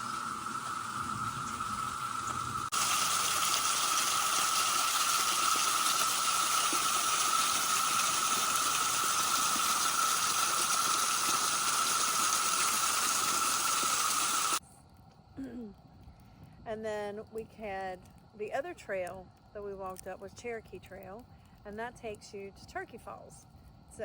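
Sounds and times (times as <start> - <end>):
waterfall rushing: 0.0 - 14.6.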